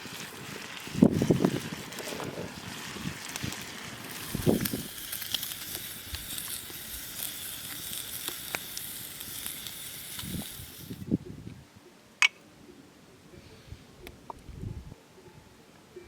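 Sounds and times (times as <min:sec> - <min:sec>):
fire sizzling and crackling: 0:00.0 - 0:11.2.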